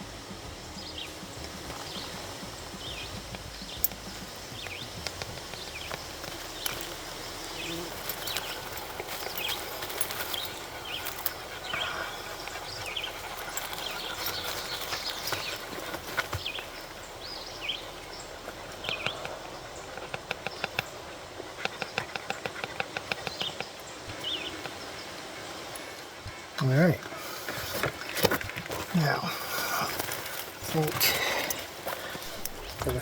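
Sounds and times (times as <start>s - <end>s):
outdoor background noise: 0.0s - 33.0s
quick ticking: 0.4s - 24.8s.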